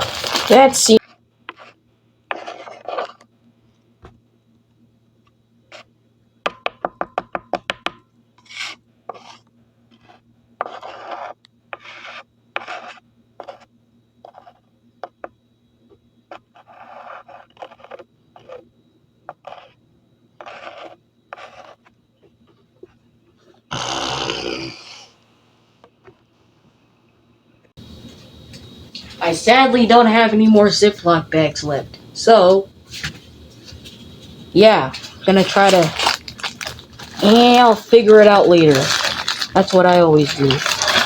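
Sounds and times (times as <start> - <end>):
faint steady hum: 0.0 - 41.0
hands scraping kitchen things: 32.9 - 41.0.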